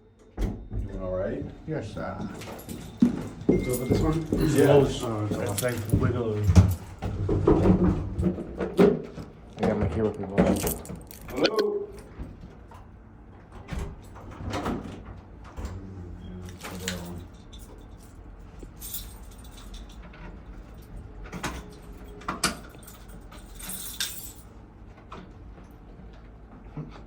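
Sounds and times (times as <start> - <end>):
keys jangling: 2.3 - 7.0, 10.3 - 11.6, 16.4 - 24.5.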